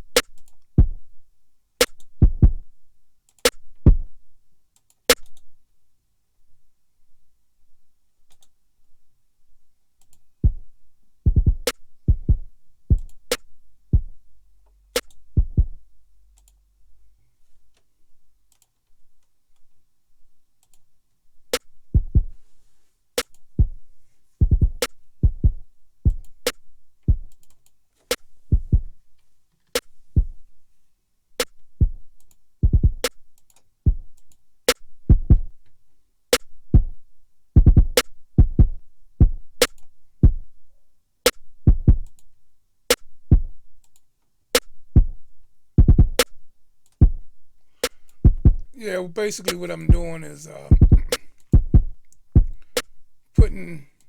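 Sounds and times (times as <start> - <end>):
deep kick drum hits: 50.7 - 51.9.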